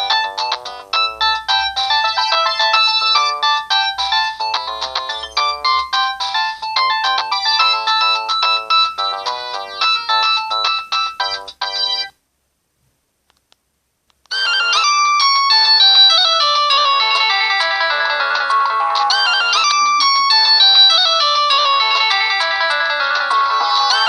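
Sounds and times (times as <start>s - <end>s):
mobile phone ringtone melody: 0.0s - 12.2s, 14.3s - 24.0s
ringtone with fuller chords: 0.0s - 12.2s, 14.3s - 24.0s.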